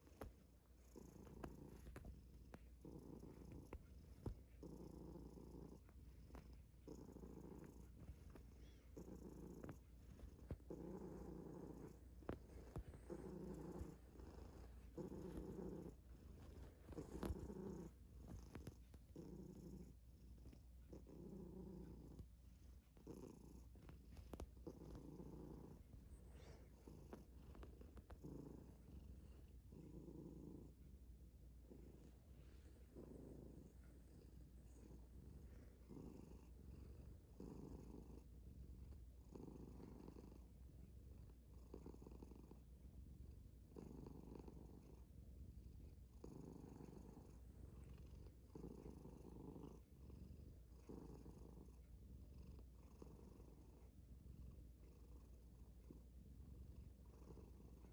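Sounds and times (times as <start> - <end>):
cat purring: 0.0 - 57.9.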